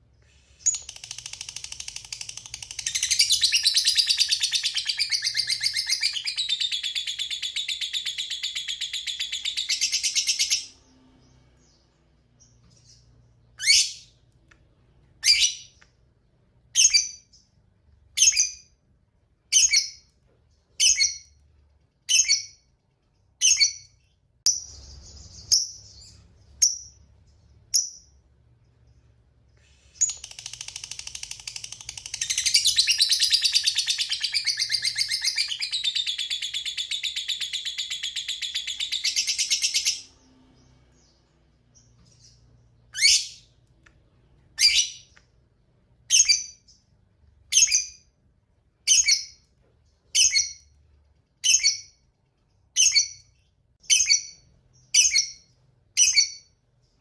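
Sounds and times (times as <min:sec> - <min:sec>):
lovebird chirping and trilling: 0:00.6 - 0:11.8, 0:12.4 - 0:14.2, 0:15.2 - 0:15.8, 0:16.7 - 0:17.4, 0:18.2 - 0:18.8, 0:19.5 - 0:20.1, 0:20.7 - 0:21.4, 0:22.0 - 0:22.7, 0:23.4 - 0:28.2, 0:29.9 - 0:43.6, 0:44.5 - 0:45.2, 0:46.0 - 0:46.9, 0:47.5 - 0:48.1, 0:48.8 - 0:49.4, 0:50.1 - 0:50.8, 0:51.4 - 0:52.0, 0:52.7 - 0:56.6.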